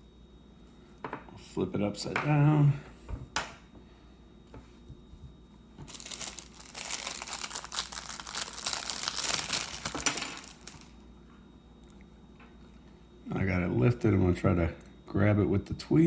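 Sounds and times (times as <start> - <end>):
glass crackling as pried up: 9.1 - 10.8.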